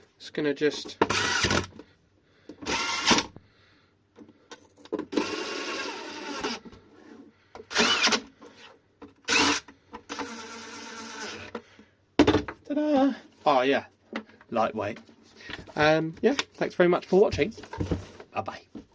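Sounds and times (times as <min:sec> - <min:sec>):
cordless screwdriver whirring: 0:01.1 - 0:01.7, 0:02.6 - 0:03.4, 0:05.1 - 0:06.7, 0:07.7 - 0:08.3, 0:09.3 - 0:11.6.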